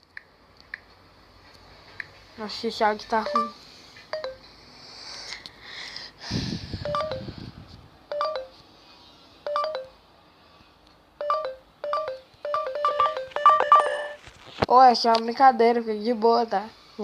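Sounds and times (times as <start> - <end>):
phone keypad beeps: 3.2 - 4.5, 6.9 - 7.3, 8.1 - 8.6, 9.5 - 10.0, 11.2 - 14.2.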